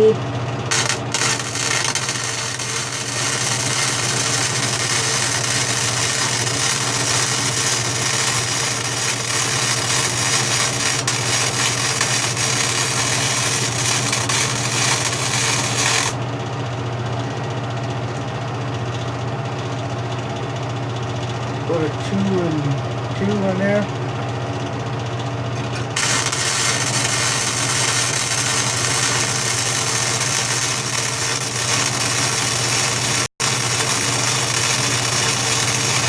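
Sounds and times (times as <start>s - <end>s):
welder low hum: 0.0s - 16.2s, 25.6s - 36.0s
welding arc crackle and hiss: 0.7s - 16.2s, 25.8s - 36.0s.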